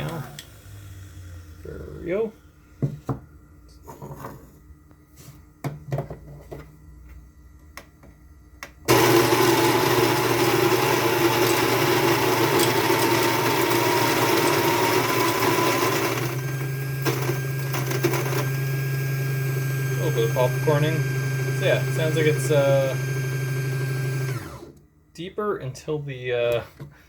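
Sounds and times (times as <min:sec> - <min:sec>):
coffee grinder grinding beans: 0:08.9 - 0:24.8.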